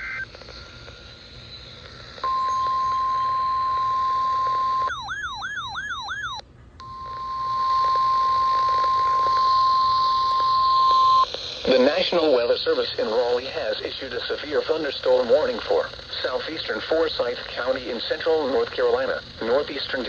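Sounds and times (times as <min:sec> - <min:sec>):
faint radio hiss: 0:00.0 - 0:04.9, 0:06.5 - 0:20.0
steady alarm tone: 0:00.0 - 0:12.5.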